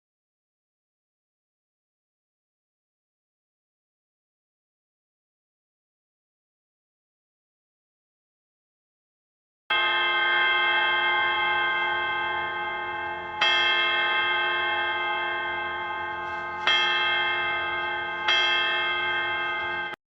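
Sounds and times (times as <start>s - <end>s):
bell striking: 9.7s - 20.0s.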